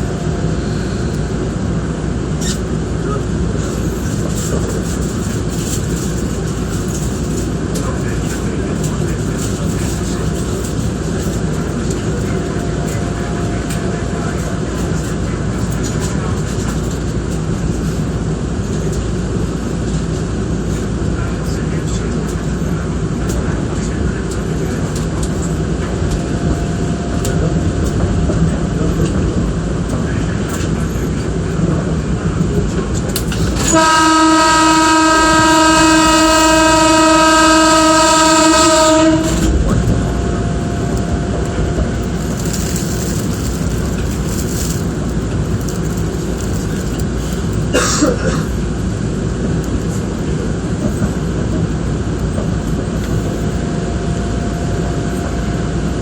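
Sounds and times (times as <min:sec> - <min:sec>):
electric train running on rails: 0:00.0 - 0:56.0
train horn blast: 0:33.5 - 0:41.6.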